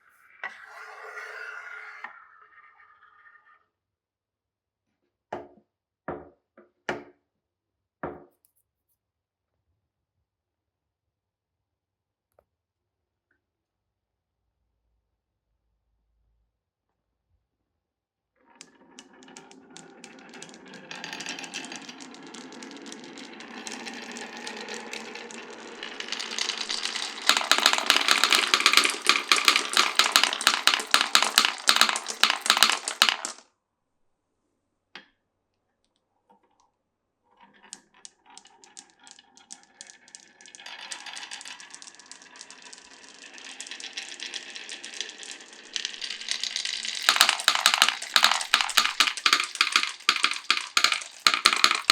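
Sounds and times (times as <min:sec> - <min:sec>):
marbles rolling down wooden run: 0:18.5 - 0:33.4, 0:37.4 - 0:51.9.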